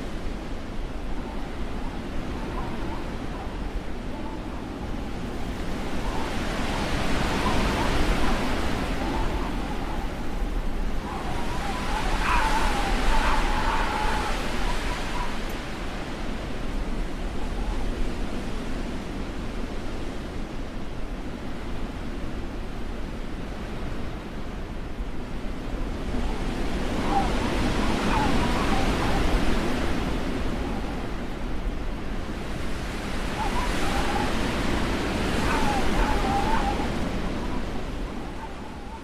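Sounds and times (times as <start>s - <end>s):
blizzard wind rushing: 0.0s - 20.3s, 25.3s - 39.0s
wavering wind whistle: 1.2s - 17.9s, 26.1s - 31.4s, 33.0s - 39.0s.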